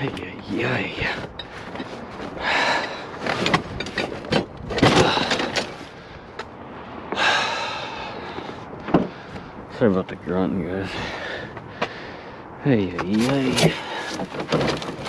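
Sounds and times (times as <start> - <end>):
man grunting and breathing hard: 2.4 - 3.2, 7.1 - 9.7
metal knocks and clanks: 3.2 - 5.9.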